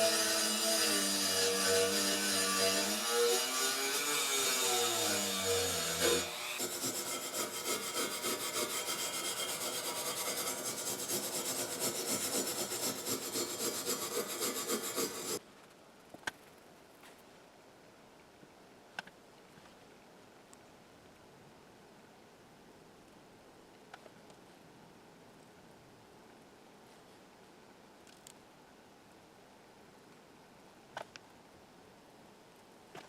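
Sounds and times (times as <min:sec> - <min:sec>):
abrasive scrubbing metal: 0:00.0 - 0:15.4.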